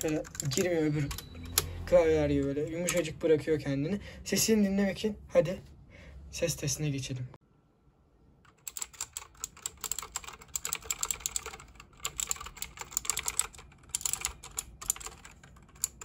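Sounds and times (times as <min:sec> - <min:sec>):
mechanical keyboard typing: 0:00.0 - 0:01.7, 0:08.5 - 0:16.0.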